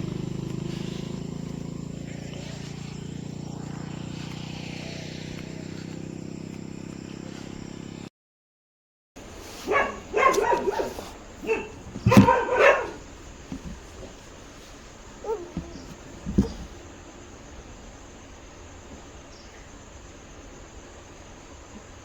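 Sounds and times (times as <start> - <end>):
low hum: 0.0 - 8.1
dog barking: 9.5 - 14.1, 15.1 - 16.6.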